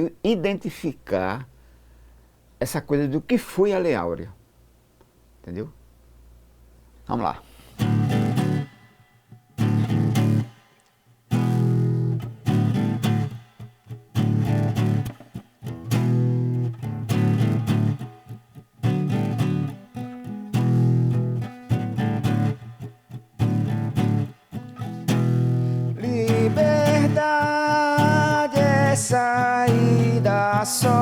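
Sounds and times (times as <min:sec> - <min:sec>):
guitar strumming chords: 0:07.8 - 0:31.0.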